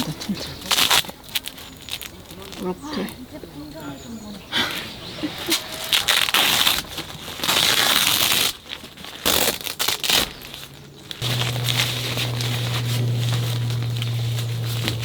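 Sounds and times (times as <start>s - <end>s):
tent fabric crinkling: 0.0s - 3.2s, 4.8s - 15.0s.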